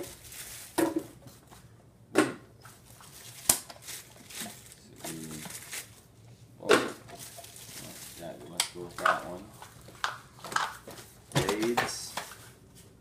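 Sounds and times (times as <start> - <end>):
plastic packaging crinkling: 0.0 - 1.2, 2.8 - 6.1, 7.0 - 12.6.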